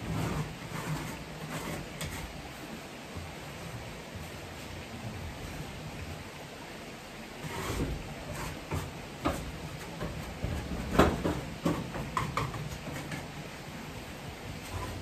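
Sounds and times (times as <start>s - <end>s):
shovel scraping coop floor: 0.0s - 2.3s, 7.4s - 8.9s, 14.6s - 15.0s.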